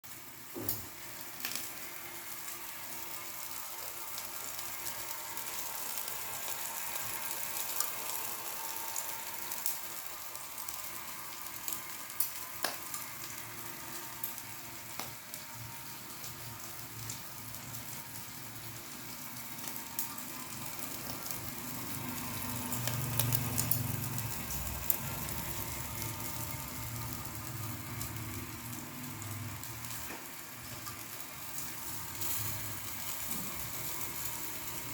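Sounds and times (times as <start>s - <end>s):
chicken sizzling on a rotisserie: 0.0s - 34.9s.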